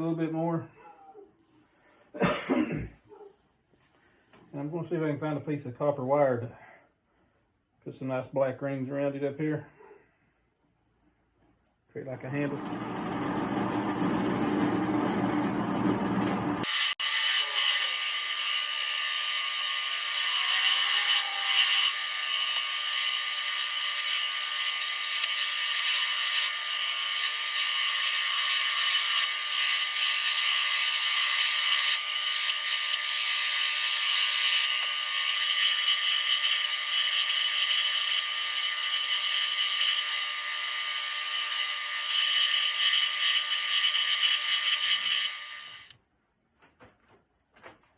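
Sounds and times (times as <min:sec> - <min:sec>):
wood lathe whine: 0:12.3 - 0:45.9.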